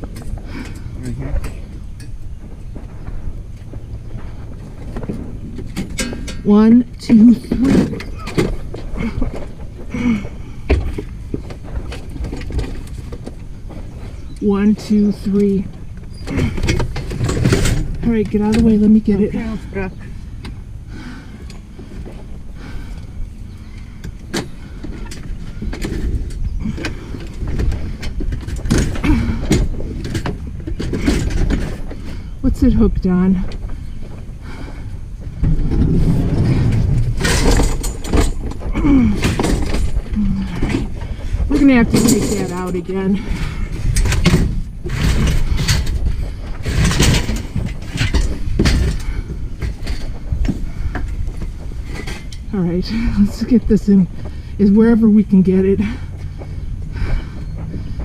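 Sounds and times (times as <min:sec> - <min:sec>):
low rumble: 0:00.0 - 0:58.0
scrap knocking and scraping: 0:23.8 - 0:58.0.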